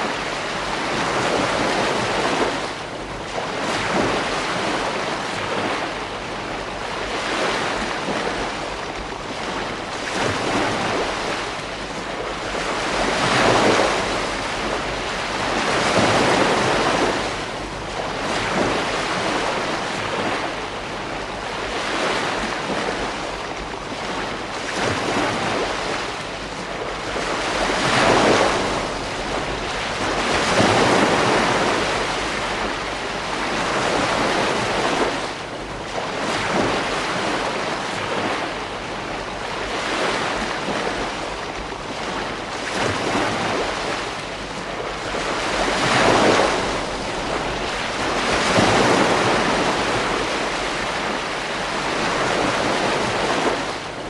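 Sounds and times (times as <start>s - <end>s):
ocean surf breaking on beach: 0.0s - 54.0s.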